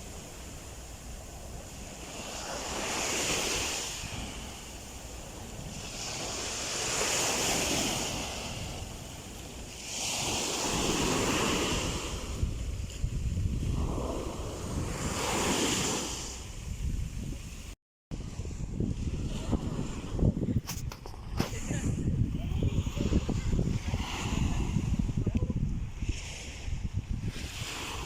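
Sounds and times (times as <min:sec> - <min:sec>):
ocean waves breaking: 0:00.0 - 0:16.7, 0:25.9 - 0:28.0
wind rumbling on microphone: 0:00.0 - 0:28.0.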